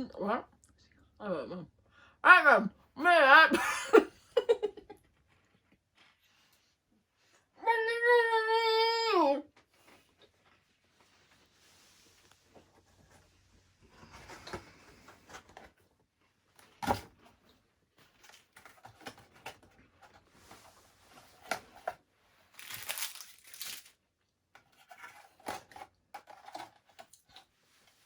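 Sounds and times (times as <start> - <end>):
plastic packaging crinkling and tearing: 22.5 - 24.0
sharp clicks and crunches: 22.6 - 24.0.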